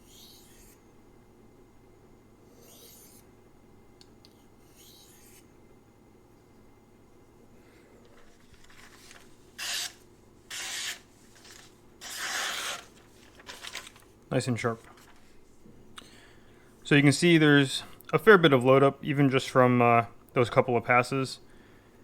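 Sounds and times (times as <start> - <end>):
knife edge scraping: 0.0 - 0.8, 2.5 - 3.3, 4.6 - 5.5, 9.6 - 11.1, 12.0 - 12.9.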